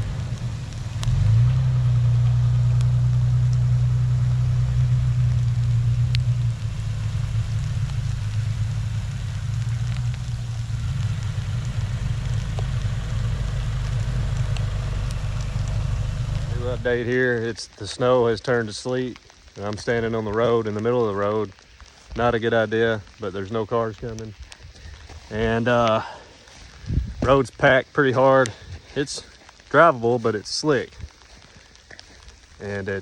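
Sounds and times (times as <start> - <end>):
vehicle engine running: 0.0 - 17.2
faint ticks: 0.0 - 17.8, 24.0 - 33.0.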